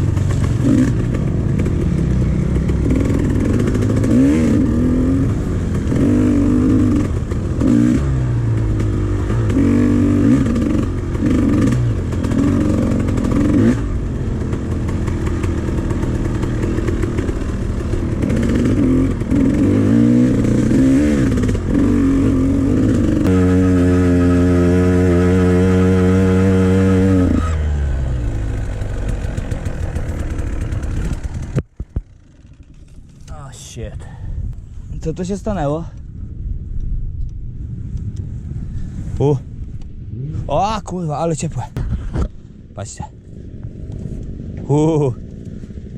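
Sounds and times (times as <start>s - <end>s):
dirt bike engine revving: 0.0s - 33.0s.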